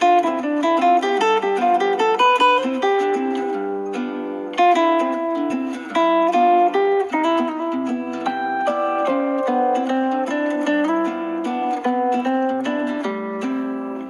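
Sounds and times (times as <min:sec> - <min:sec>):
phone ringtone melody: 0:08.2 - 0:10.8.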